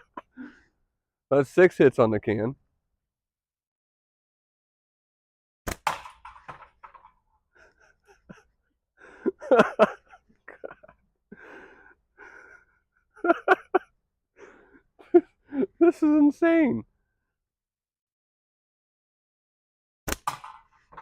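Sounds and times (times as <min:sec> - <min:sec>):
steel ball cracking against tin can: 0:05.7 - 0:07.2, 0:20.1 - 0:21.0.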